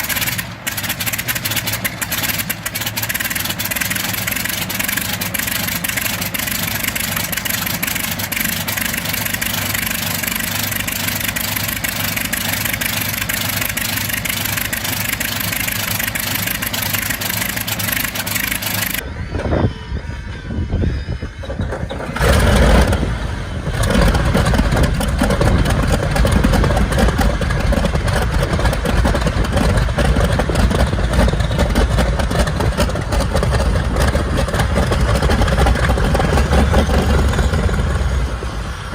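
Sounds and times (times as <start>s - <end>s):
aircraft engine starting with a burst: 0.0s - 38.9s
propeller aircraft engine running: 0.0s - 38.9s.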